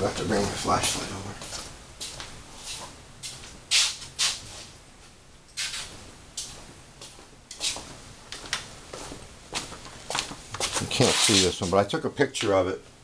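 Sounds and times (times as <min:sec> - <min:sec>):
scuffing and rustling handling: 0:05.8 - 0:12.6.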